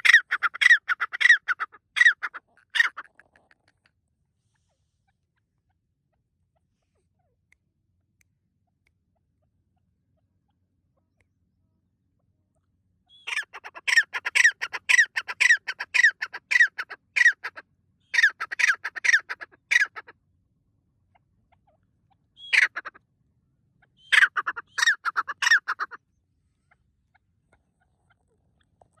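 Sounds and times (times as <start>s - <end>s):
partridge calling harsh notes: 0.0s - 3.1s, 13.2s - 17.6s, 18.2s - 20.1s, 24.0s - 26.0s.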